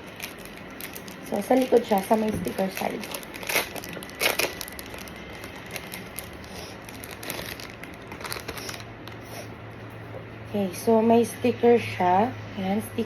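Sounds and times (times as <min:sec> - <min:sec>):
packaging crinkling: 0:00.0 - 0:09.2.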